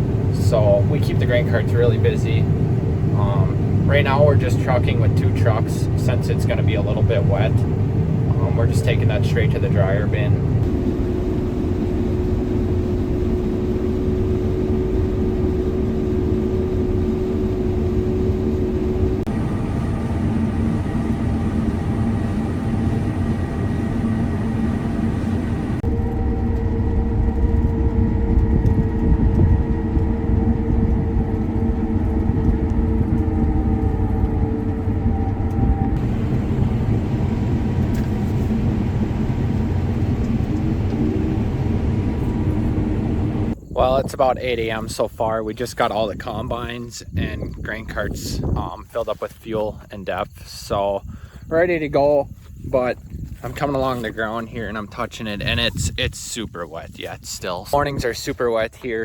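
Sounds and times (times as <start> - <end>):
whining tones: 0.0 - 43.8
heavy machinery engine drone: 0.0 - 56.0.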